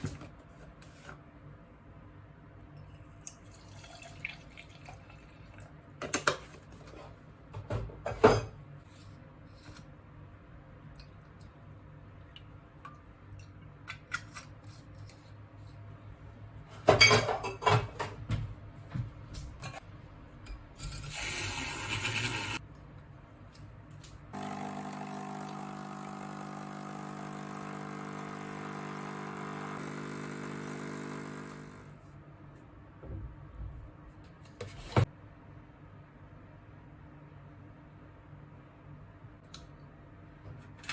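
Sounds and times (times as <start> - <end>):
kitchen appliance humming: 20.8 - 22.6, 24.4 - 32.0.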